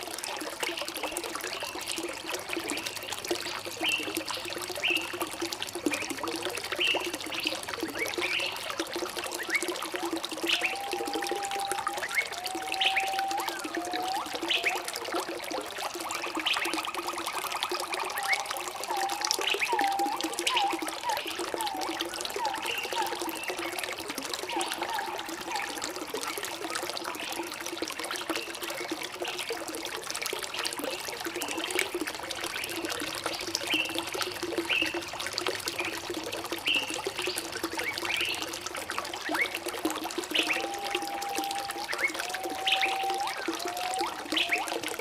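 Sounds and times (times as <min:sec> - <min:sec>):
water trickling and pouring: 0:00.0 - 0:45.0
whistled notes: 0:10.4 - 0:14.9, 0:18.0 - 0:23.8, 0:40.3 - 0:44.7.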